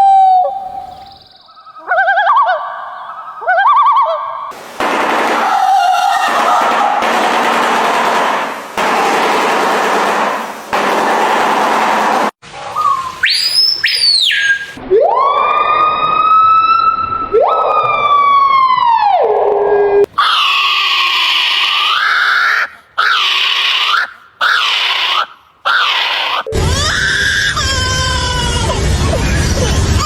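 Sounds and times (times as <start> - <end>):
bird calls: 0.4 - 4.5, 12.8 - 14.8, 21.8 - 27.0
siren-like bird wail: 5.4 - 7.0, 12.6 - 30.0.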